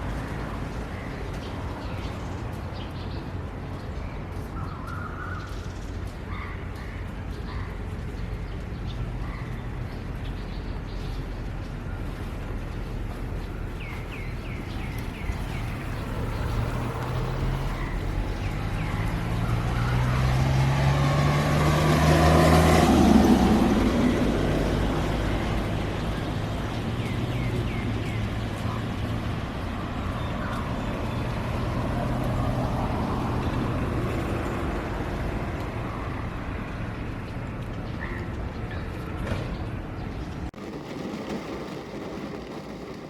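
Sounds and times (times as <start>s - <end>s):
vehicle passing by: 14.2s - 37.7s.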